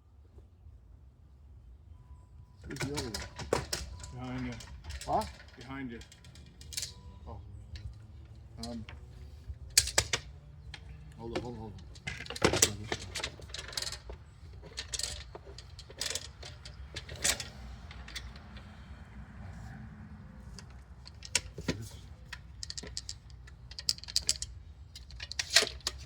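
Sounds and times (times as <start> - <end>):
tools and boards knocking and clinking: 2.7 - 7.0, 9.7 - 18.5.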